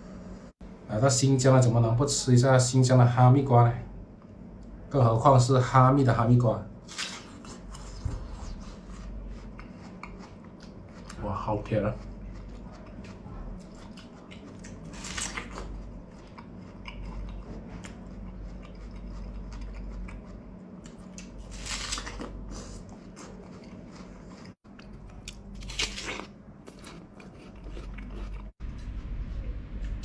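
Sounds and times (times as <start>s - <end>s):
chewing juicy melon: 6.9s - 29.2s.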